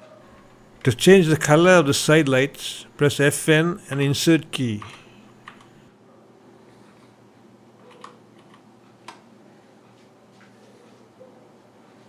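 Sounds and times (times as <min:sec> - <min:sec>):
faint steady hum: 0:00.0 - 0:06.0.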